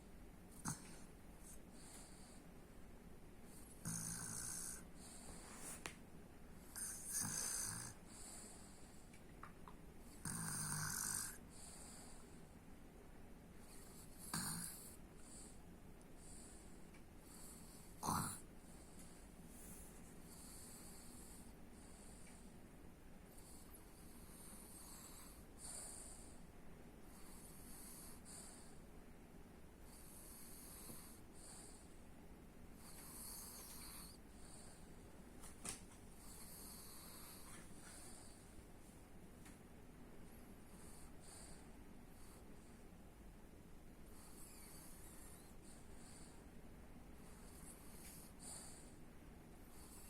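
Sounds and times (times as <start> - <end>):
quiet snoring: 0.0 - 2.5, 3.5 - 5.8, 6.6 - 9.2, 10.0 - 12.6, 13.6 - 22.6, 23.3 - 28.9, 29.8 - 32.1, 32.7 - 35.1, 36.1 - 38.6, 40.3 - 43.0, 44.0 - 46.6, 47.2 - 50.0
person snoring: 3.8 - 4.8, 10.2 - 11.4, 14.3 - 14.9, 18.0 - 18.4.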